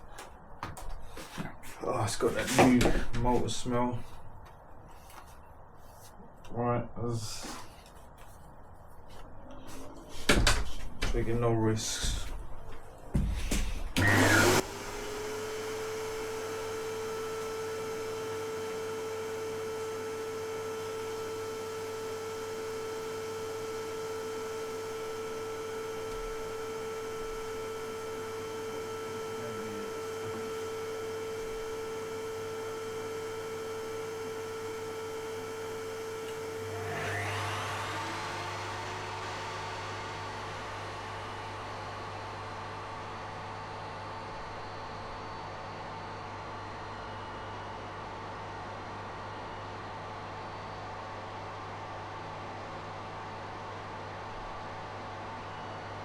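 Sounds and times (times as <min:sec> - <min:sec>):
table saw motor whining: 0:14.0 - 0:45.3.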